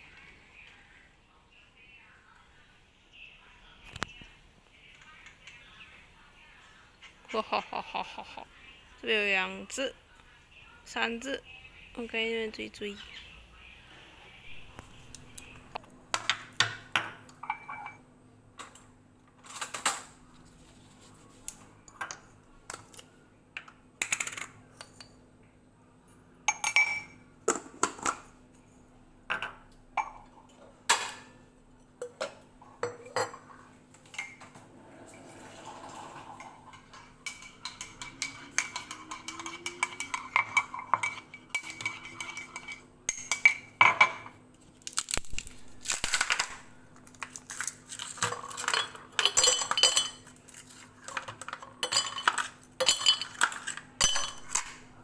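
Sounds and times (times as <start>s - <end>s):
dishes and cutlery clinking: 16.1s - 18.0s, 26.5s - 44.4s, 46.0s - 55.0s.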